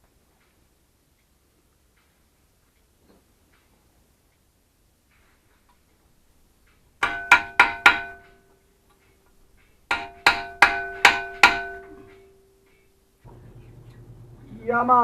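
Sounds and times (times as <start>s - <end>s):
hammer striking metal: 7.0s - 8.6s, 9.9s - 12.8s.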